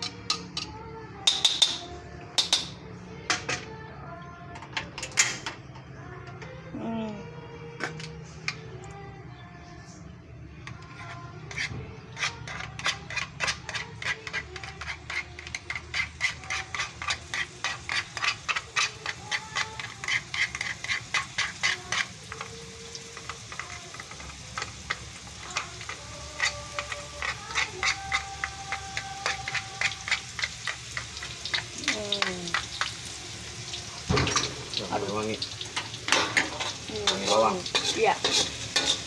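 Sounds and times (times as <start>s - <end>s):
metal spatula scraping pan: 10.6s - 33.4s, 34.2s - 39.0s
onions sizzling: 14.8s - 39.0s.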